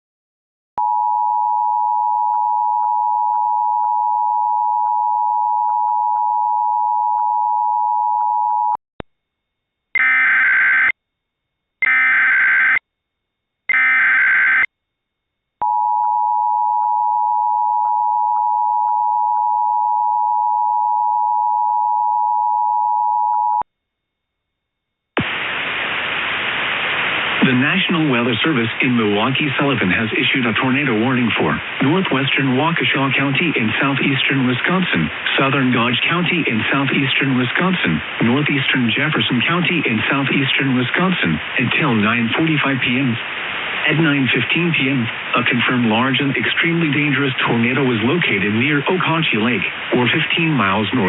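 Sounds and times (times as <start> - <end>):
static hiss: 25.2 - 51.0.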